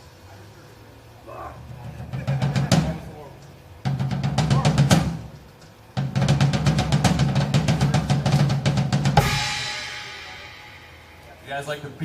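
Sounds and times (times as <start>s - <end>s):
fast drum roll: 1.6s - 12.0s
drum hit: 1.8s - 3.2s, 3.8s - 5.4s, 6.0s - 11.8s
cymbal crash: 9.0s - 12.0s.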